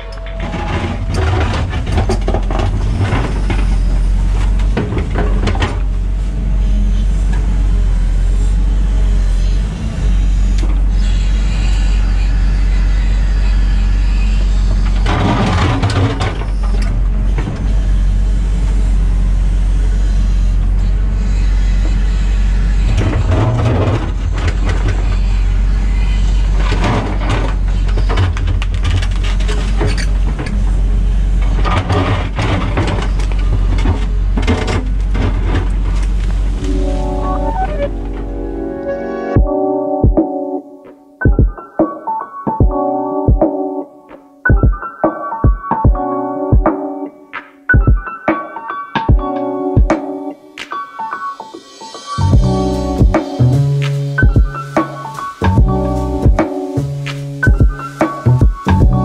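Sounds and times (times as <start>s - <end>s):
diesel engine running: 0.0s - 39.7s, 52.2s - 59.0s.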